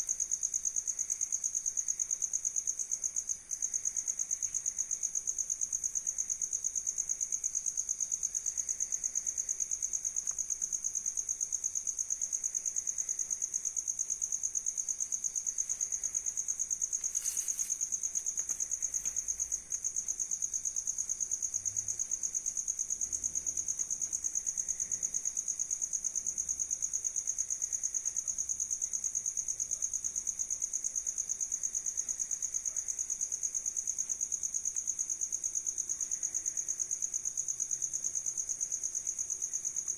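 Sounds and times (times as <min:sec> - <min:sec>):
insects trilling: 0:11.9 - 0:23.6.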